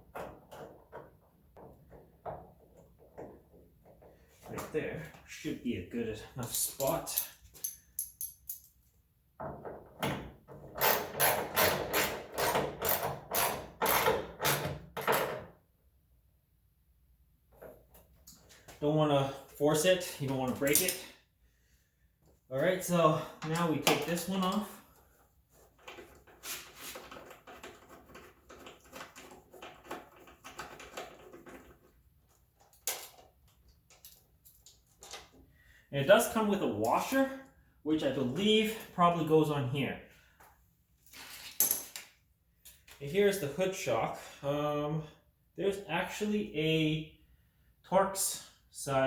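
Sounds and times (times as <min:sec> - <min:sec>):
ratchet wrench ratcheting: 0:10.8 - 0:15.2.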